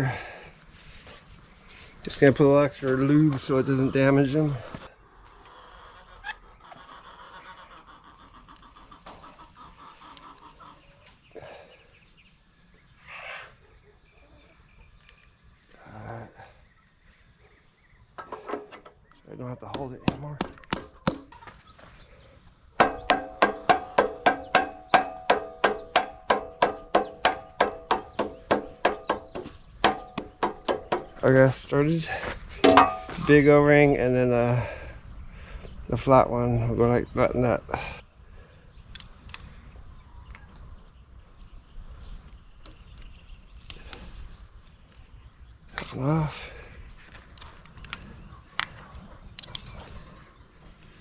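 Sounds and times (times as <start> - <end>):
hammer tapping on metal: 22.8 - 31.2, 32.6 - 33.2.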